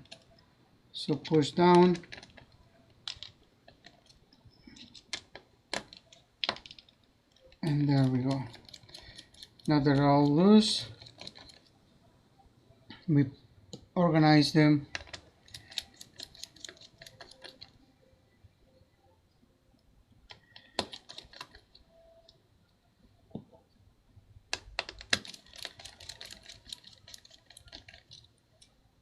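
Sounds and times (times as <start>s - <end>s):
small screws and tools clicking: 3.1s - 11.7s, 14.9s - 17.7s, 24.5s - 28.7s.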